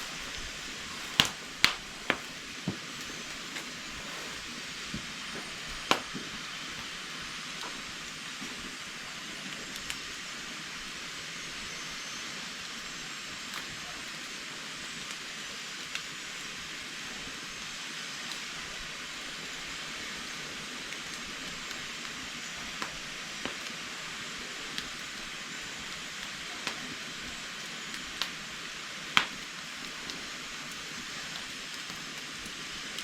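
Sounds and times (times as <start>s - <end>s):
fire pop: 0.0s - 8.8s, 20.8s - 23.9s, 24.7s - 33.0s
wood fire hissing and crackling: 0.0s - 33.0s.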